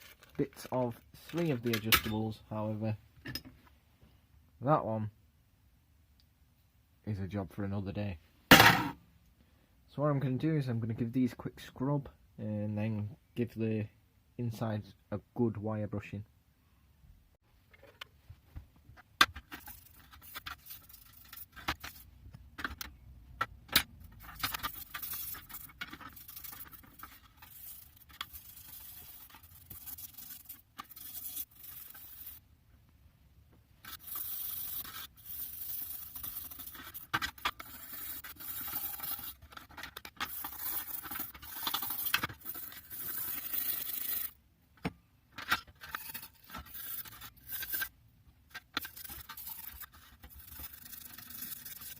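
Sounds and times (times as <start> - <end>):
brush scrubbing metal parts: 19.3 - 22.8, 23.8 - 32.4, 33.8 - 44.4, 45.7 - 51.9.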